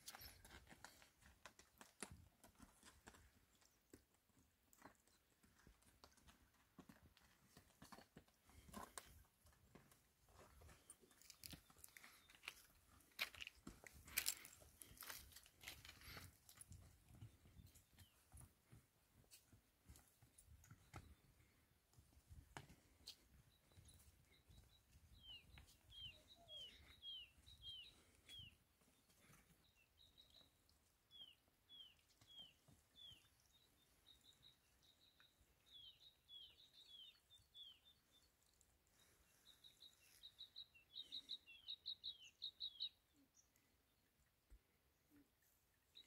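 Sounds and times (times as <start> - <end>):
small bird chirping: 23.5 - 43.7.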